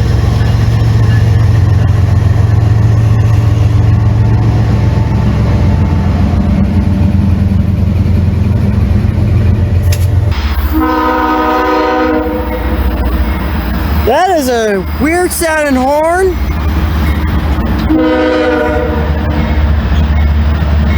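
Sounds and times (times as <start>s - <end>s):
diesel locomotive engine rumble: 0.0s - 20.9s
locomotive air horn chord: 10.4s - 12.9s, 17.8s - 19.6s.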